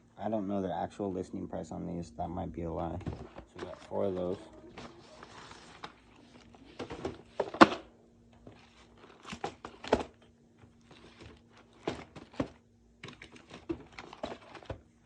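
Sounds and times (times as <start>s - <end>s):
faint steady hum: 0.0s - 15.0s
packages knocking and thudding: 2.8s - 15.0s
plastic wrapping crinkling: 3.2s - 7.6s, 8.4s - 14.8s.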